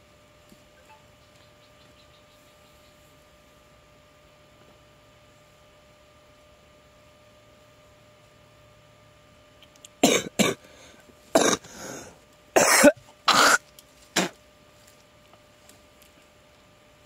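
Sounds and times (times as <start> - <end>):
man coughing: 10.0 - 10.6, 11.4 - 11.8, 12.6 - 13.6, 14.2 - 14.4.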